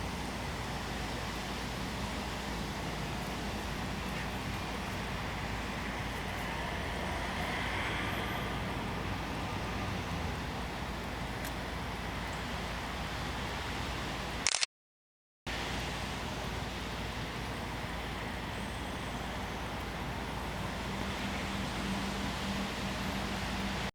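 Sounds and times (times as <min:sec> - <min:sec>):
low rumble with hiss: 0:00.0 - 0:14.4.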